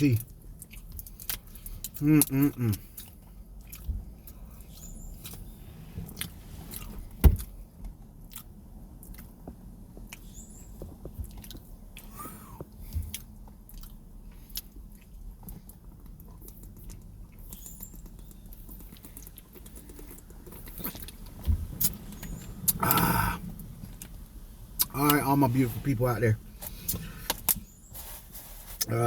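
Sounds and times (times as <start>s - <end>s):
person chewing: 0.2s - 7.6s, 8.2s - 9.4s, 11.2s - 24.2s
wet mouth clicks and smacks: 13.1s - 23.2s.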